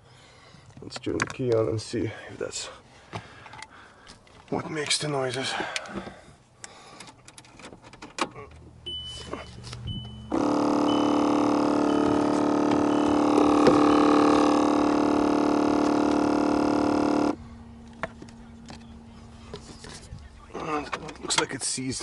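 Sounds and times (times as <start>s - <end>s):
servo motor buzzing hum: 10.3s - 17.4s.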